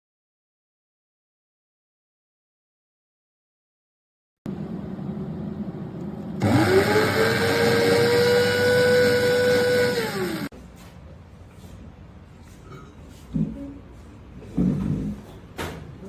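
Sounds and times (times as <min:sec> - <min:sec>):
coffee grinder motor whine: 0:06.4 - 0:10.5.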